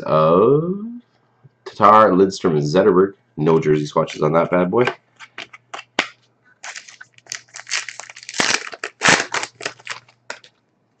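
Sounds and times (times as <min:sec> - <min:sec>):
card pack wrapper crinkling: 0:05.2 - 0:10.6.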